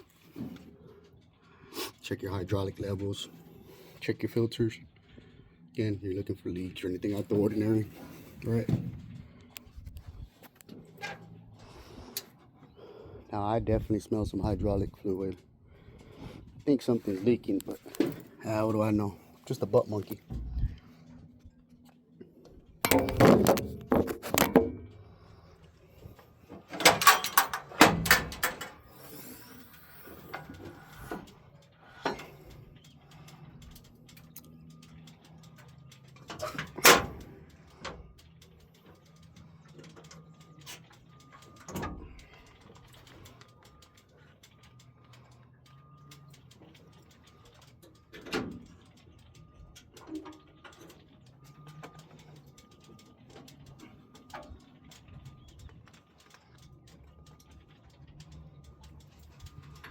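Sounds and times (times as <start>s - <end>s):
low steady hum: 0.0s - 59.9s
metal clanks and knocks: 7.1s - 9.6s, 22.8s - 25.1s, 26.0s - 28.9s, 36.1s - 38.0s.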